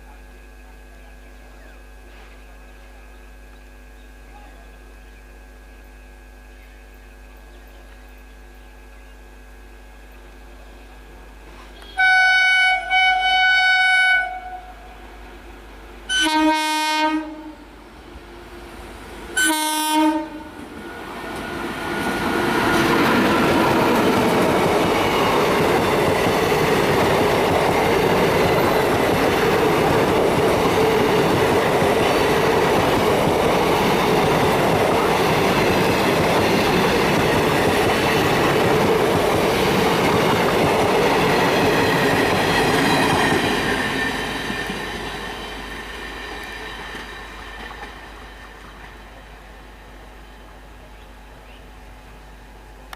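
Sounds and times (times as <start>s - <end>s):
locomotive horn blasts: 11.8s - 15.0s, 16.1s - 17.7s, 19.4s - 20.6s
train passing at speed: 12.0s - 50.9s.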